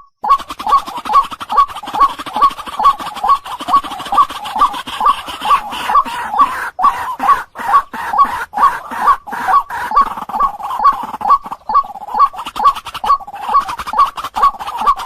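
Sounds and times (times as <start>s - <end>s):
waterhen calling: 0.0s - 15.0s.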